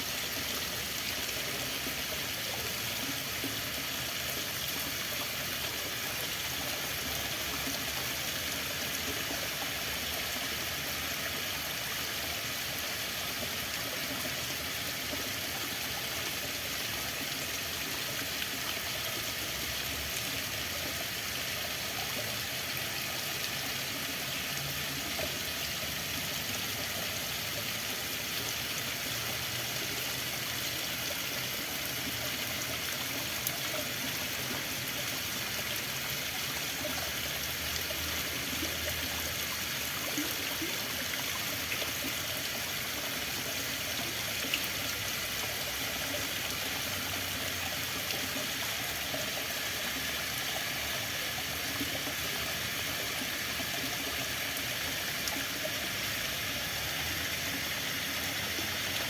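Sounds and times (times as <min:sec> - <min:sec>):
running water rushing: 0:00.0 - 0:59.0.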